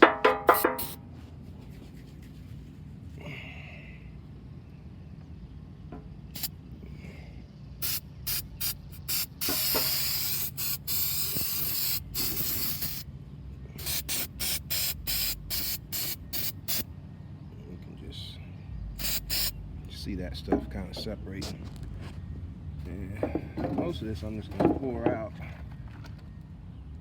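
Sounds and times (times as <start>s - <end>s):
aerosol spray hissing: 7.8s - 13.0s, 13.8s - 16.8s, 19.0s - 19.6s.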